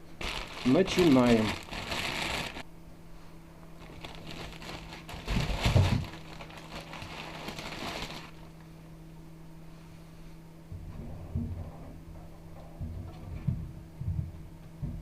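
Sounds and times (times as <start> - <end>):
paper crinkling and rustling: 0.2 - 2.6, 3.8 - 8.6.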